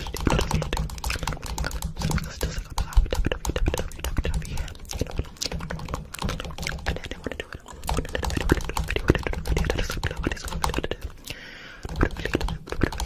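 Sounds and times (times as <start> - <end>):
rapid clattering clicks: 0.0 - 11.2, 11.8 - 13.0.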